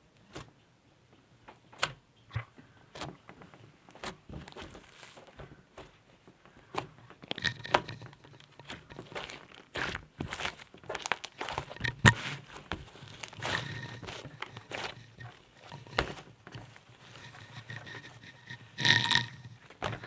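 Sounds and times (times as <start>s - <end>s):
slime clicking and crackling: 6.7s - 16.9s.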